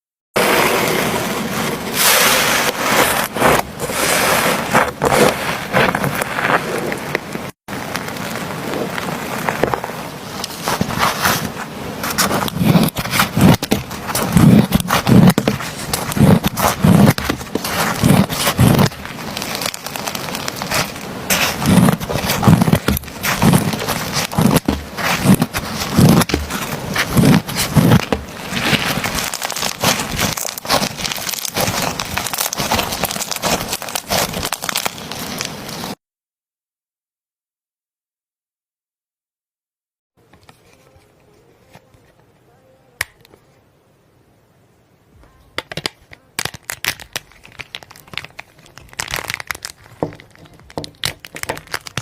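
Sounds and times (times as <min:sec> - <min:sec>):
slime crackling and popping: 0:12.0 - 0:36.0, 0:45.6 - 0:52.0.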